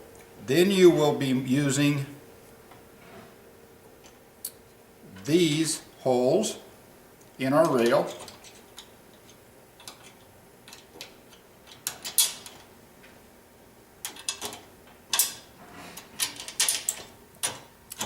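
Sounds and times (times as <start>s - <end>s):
clicks and clinks of metal parts: 7.6s - 12.7s, 14.0s - 18.0s.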